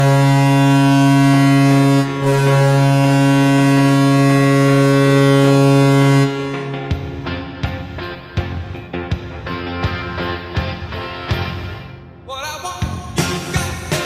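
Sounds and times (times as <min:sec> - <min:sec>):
low-pitched air horn blasts: 0:00.0 - 0:08.9.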